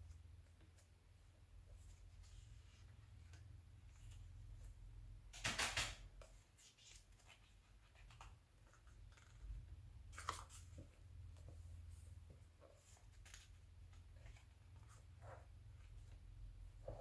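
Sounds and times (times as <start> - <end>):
magazine pages rustling: 6.6 - 11.6, 12.6 - 15.2.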